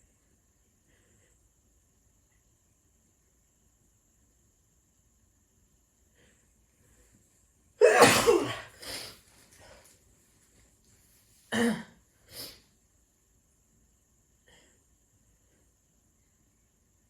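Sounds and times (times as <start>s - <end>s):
quiet breath sounds: 0.0s - 2.4s, 6.0s - 7.5s, 14.3s - 16.5s
woman sneezing: 7.8s - 9.0s.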